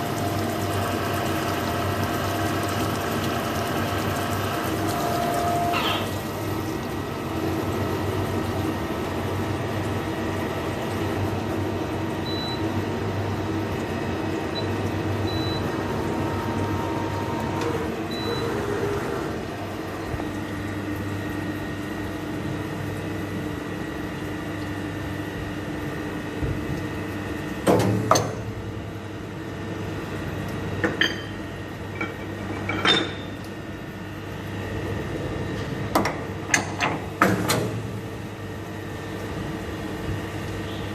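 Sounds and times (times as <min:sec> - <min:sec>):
drilling machine humming: 0:00.0 - 0:21.4.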